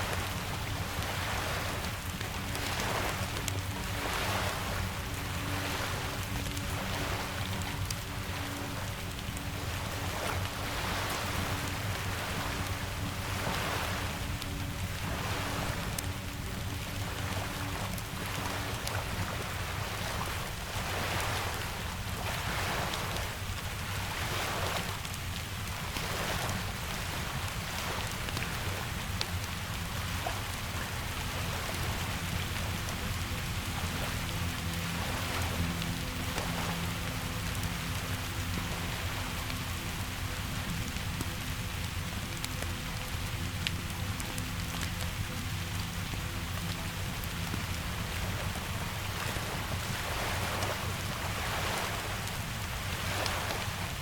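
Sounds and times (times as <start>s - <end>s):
steady rain falling: 0.0s - 54.0s
wood fire crackling: 23.4s - 54.0s.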